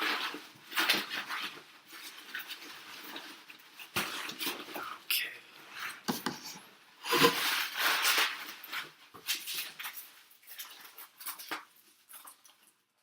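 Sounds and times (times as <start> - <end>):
cardboard rustling and tearing: 7.0 - 11.5.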